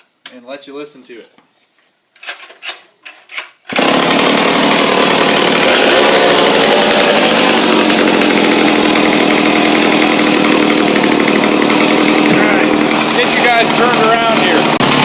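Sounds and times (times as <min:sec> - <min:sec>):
chainsaw engine running: 0:03.7 - 0:15.0
starter cord rasps: 0:03.7 - 0:15.0.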